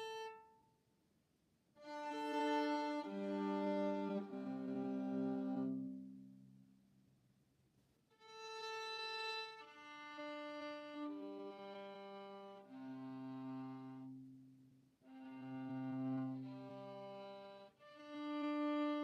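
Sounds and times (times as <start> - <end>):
viola bowing sustained notes: 2.0 - 6.0.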